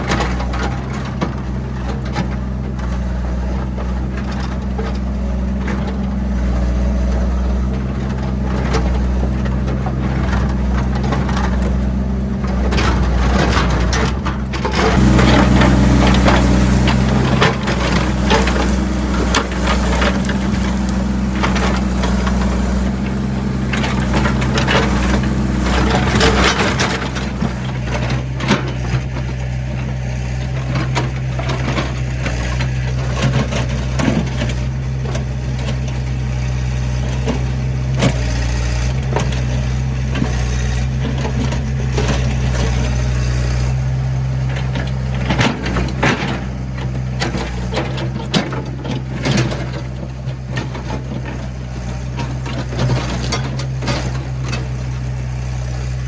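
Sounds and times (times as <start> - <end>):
diesel machine engine running: 0.0 - 56.0
bucket scraping through rocks: 12.8 - 29.6.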